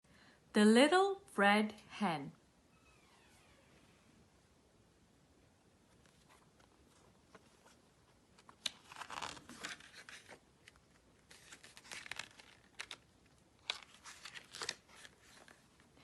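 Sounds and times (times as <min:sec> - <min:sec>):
paper rustling and crinkling: 0:05.9 - 0:16.0.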